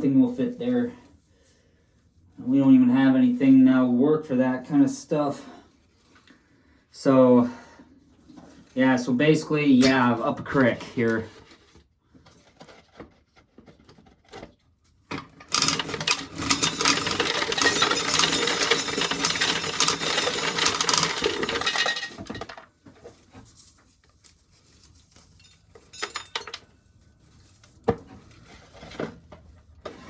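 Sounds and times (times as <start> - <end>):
corn sheller stripping corn: 15.2 - 22.7
kernels rattling into metal can: 15.2 - 22.7, 25.4 - 26.7.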